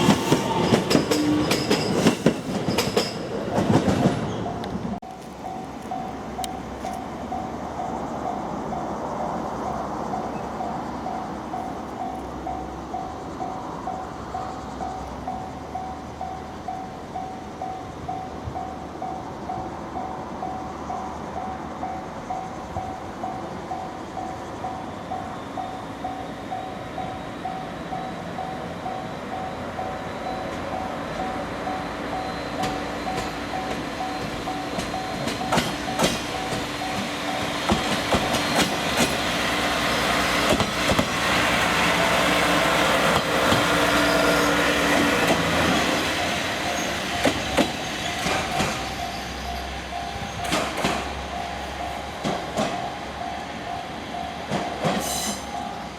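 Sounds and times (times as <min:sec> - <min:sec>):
wheels clattering over rail joints: 0:00.0 - 0:07.4, 0:32.2 - 0:52.9
level-crossing warning bell: 0:00.0 - 0:55.9
train rumble: 0:00.0 - 0:55.9.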